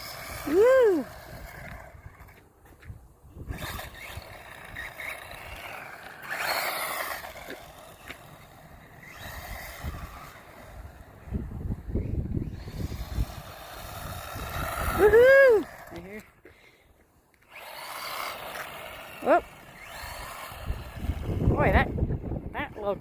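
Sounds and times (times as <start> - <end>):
rc car motor whine: 0.0 - 16.4, 17.4 - 22.9
tyre noise: 0.0 - 16.6.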